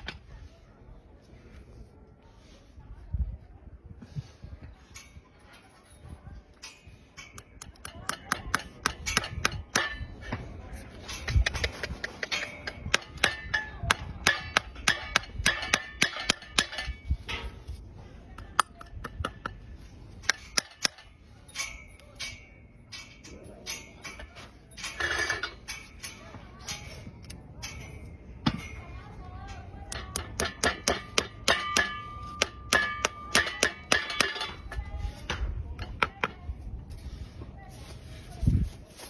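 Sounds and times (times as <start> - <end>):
metal tools tapping and clinking: 4.8 - 17.8, 18.4 - 36.6.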